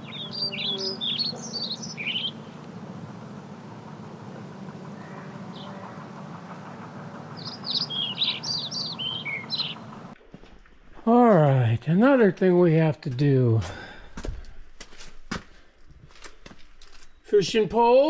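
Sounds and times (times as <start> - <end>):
songbird singing high notes: 0.0 - 2.5, 7.4 - 10.0
steady low hum: 0.0 - 10.2.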